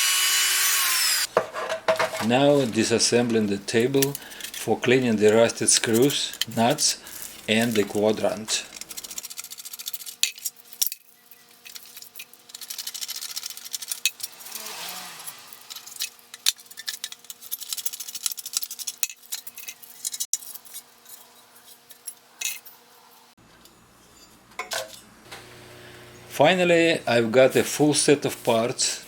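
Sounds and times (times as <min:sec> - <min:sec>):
steel parts and tools clinking: 0:03.7 - 0:14.5, 0:15.2 - 0:22.8.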